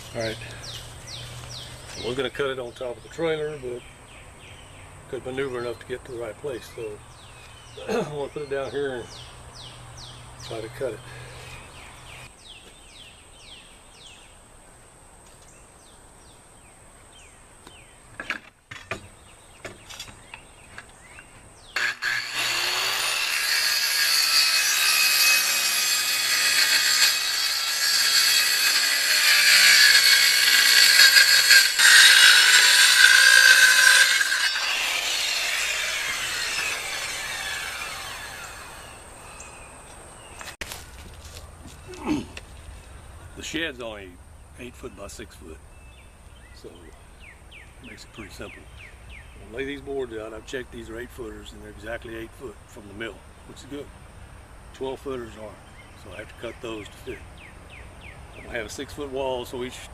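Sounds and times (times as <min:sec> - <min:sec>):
bird chirps: 0:00.0 - 0:14.4
saw blade winding down: 0:21.8 - 0:39.0
circular saw cutting wood: 0:21.8 - 0:39.5.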